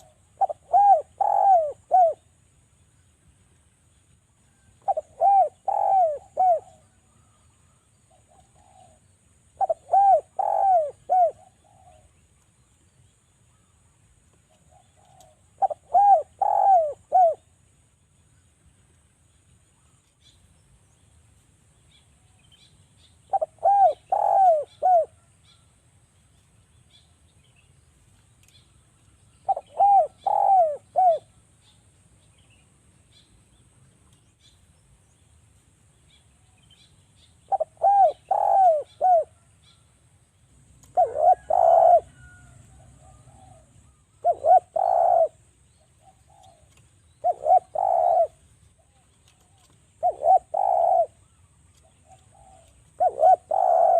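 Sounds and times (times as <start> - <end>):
dove cooing: 0.0 - 2.3, 4.8 - 7.3, 8.1 - 12.2, 14.6 - 17.5, 23.3 - 25.3, 29.4 - 31.4, 37.5 - 39.5, 40.8 - 53.9.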